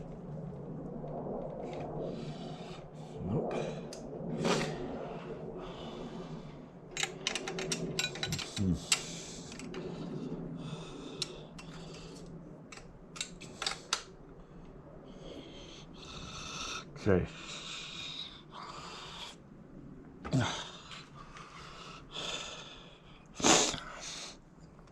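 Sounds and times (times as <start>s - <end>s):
metal tools clicking and tapping: 7.0s - 9.7s.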